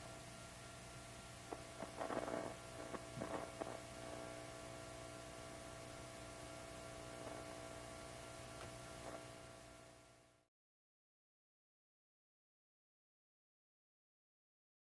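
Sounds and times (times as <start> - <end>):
amplifier mains hum: 0.0 - 10.5
faint scratchy noises: 1.4 - 9.8.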